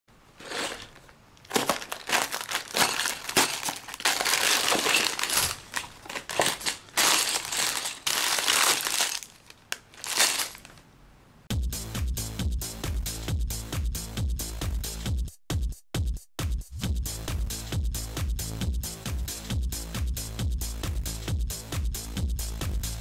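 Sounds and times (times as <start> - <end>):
packaging crumpled by hand: 0.4 - 10.8.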